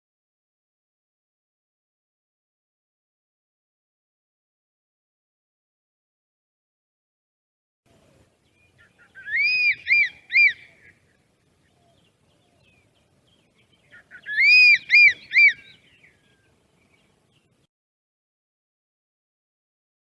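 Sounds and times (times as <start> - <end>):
bird calling: 7.9 - 17.6.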